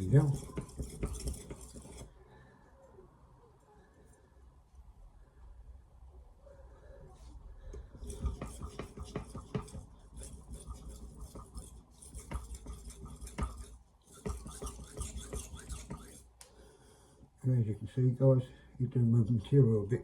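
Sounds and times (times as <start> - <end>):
knife scraping on whetstone: 0.0 - 2.1, 8.0 - 16.3.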